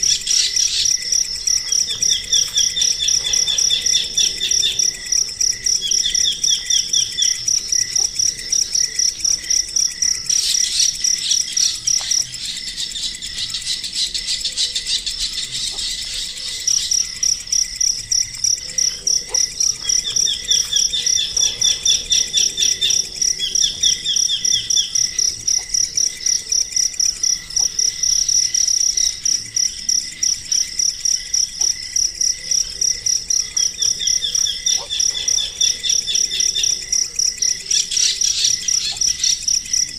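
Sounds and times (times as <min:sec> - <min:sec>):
rapid lower chirping: 0:00.0 - 0:29.2
high hissy insect buzz: 0:00.0 - 0:39.9
insects chirping in a pulsed trill: 0:00.0 - 0:39.9.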